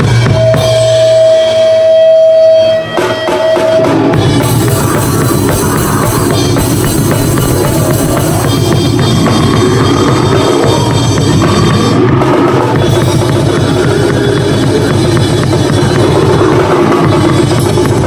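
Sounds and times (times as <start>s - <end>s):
very fast drumming: 0.0s - 18.0s
loud goregrind music: 2.8s - 18.0s.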